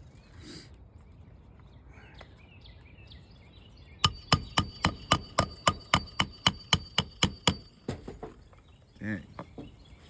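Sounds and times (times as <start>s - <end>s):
hammer striking roofing nail: 4.0s - 8.2s.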